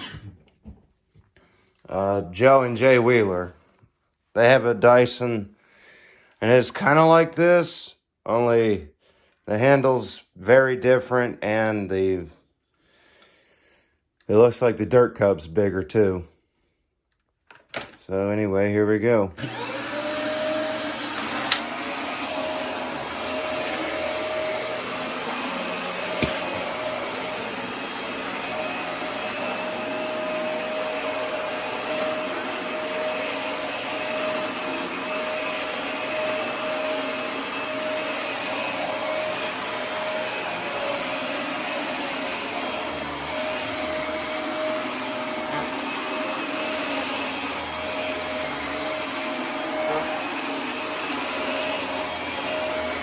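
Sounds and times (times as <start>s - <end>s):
vacuum cleaner running: 19.4s - 53.0s.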